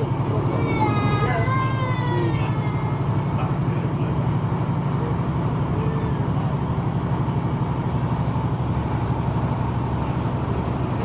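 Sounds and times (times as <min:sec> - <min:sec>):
train rumble inside carriage: 0:00.0 - 0:11.0.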